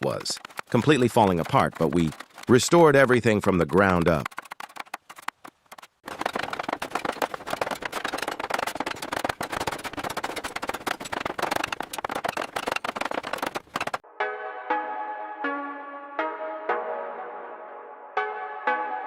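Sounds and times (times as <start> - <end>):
rapid construction clatter: 0.0 - 14.0.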